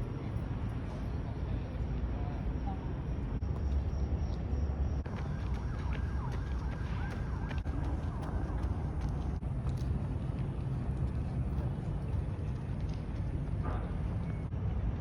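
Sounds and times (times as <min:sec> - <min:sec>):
low rumble of road vehicles: 0:00.0 - 0:15.0.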